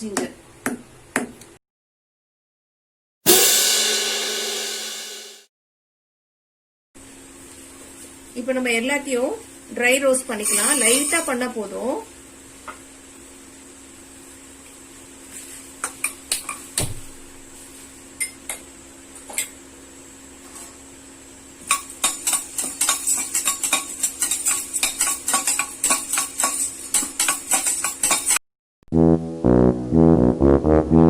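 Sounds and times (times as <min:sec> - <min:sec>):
spices rattling in a pan: 0:21.7 - 0:28.4
brassy music: 0:28.9 - 0:31.0.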